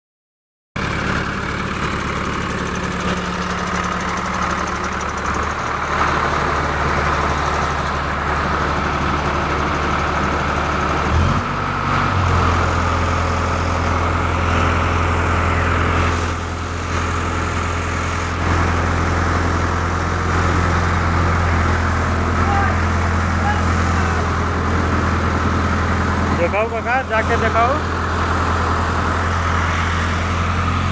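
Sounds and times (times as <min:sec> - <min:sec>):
vehicle engine idling: 0:00.8 - 0:30.9.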